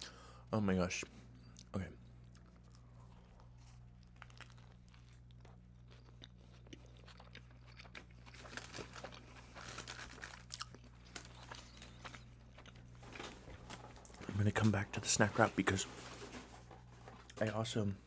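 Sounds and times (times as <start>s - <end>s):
faint electrical hum: 0.0s - 18.0s
close chewing with crunches: 1.4s - 13.0s.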